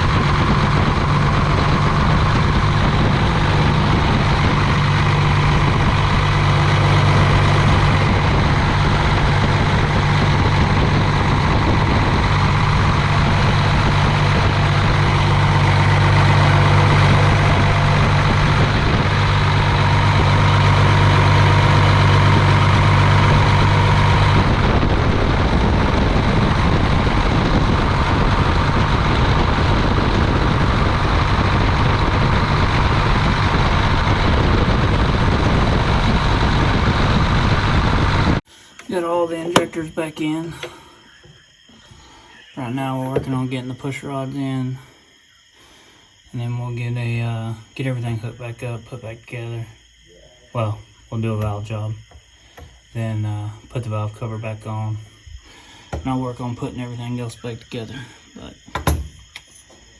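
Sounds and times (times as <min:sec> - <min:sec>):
machine running steadily: 0:00.0 - 0:41.4
strong low hum: 0:00.0 - 0:44.9.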